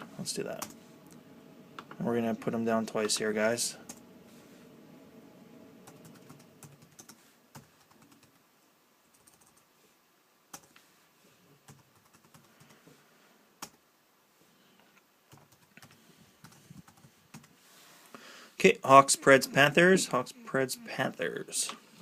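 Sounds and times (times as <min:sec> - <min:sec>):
typing on computer keyboard: 0:05.9 - 0:08.4, 0:09.1 - 0:09.6, 0:11.7 - 0:12.8, 0:15.3 - 0:17.5.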